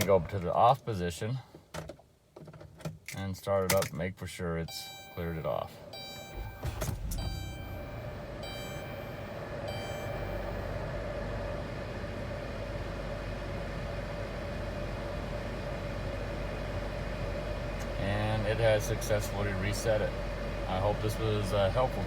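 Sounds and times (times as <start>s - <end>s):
car engine idling: 4.7s - 10.8s
electronic dashboard chimes: 4.7s - 10.8s.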